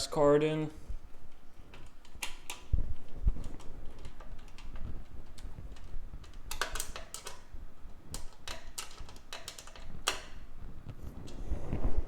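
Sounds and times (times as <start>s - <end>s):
clicks and taps of hardware: 8.1s - 10.4s.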